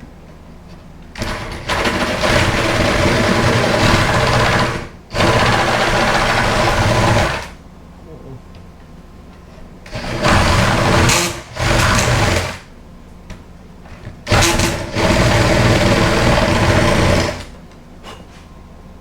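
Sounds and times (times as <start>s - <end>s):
electric drill boring into wood: 1.2s - 7.6s, 9.9s - 12.6s, 14.3s - 17.5s.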